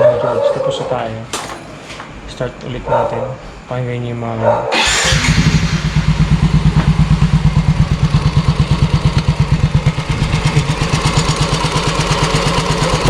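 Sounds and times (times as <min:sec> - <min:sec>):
scooter engine idling: 0:04.8 - 0:13.0.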